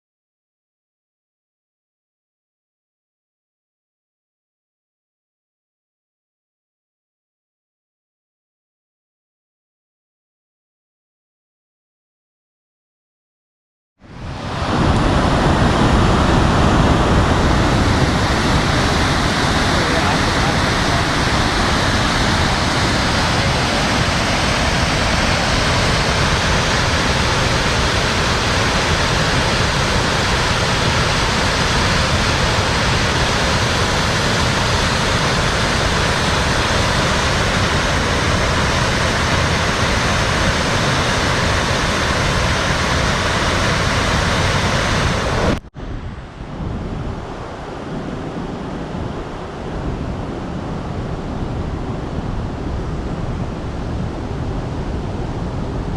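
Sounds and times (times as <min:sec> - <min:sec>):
waterfall rushing: 0:14.1 - 0:45.6.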